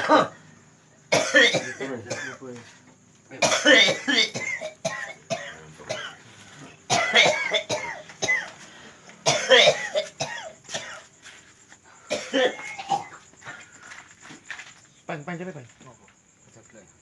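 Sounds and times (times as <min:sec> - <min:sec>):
man coughing hard: 0:00.0 - 0:00.3, 0:01.1 - 0:02.5, 0:03.3 - 0:06.2, 0:06.9 - 0:08.6, 0:09.2 - 0:11.1, 0:12.1 - 0:13.2.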